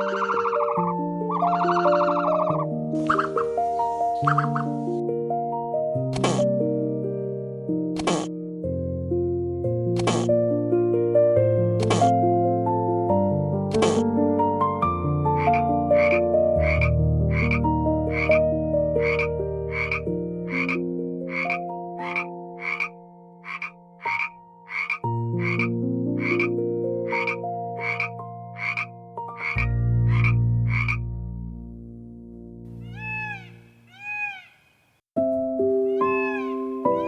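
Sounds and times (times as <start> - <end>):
frog croaking: 0.0 - 4.9, 6.1 - 6.4, 8.0 - 8.3, 10.0 - 10.3, 11.8 - 12.1, 13.7 - 14.0, 15.3 - 31.0, 32.7 - 35.0, 35.9 - 37.0
soft background music: 0.0 - 33.3, 35.2 - 37.0.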